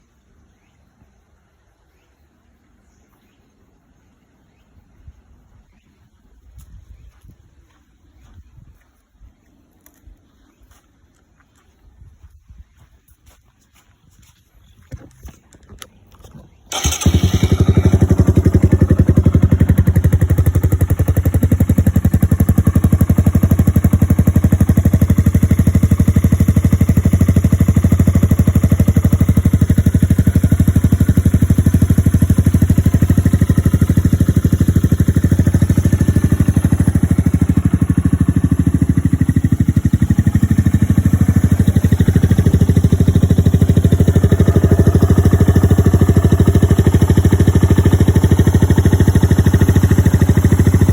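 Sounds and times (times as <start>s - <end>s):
motorcycle engine idling: 15.7s - 50.9s.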